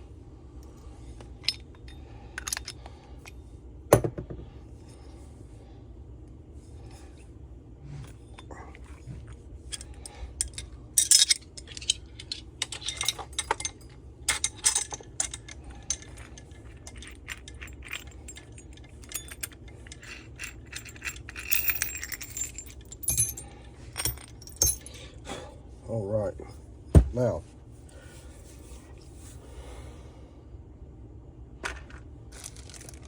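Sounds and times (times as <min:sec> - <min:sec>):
faint low hum: 0:00.0 - 0:33.0
metal parts jangling: 0:01.2 - 0:02.9, 0:08.0 - 0:25.2, 0:32.3 - 0:33.0
metal tools clinking and rattling: 0:01.2 - 0:02.9, 0:08.0 - 0:25.2.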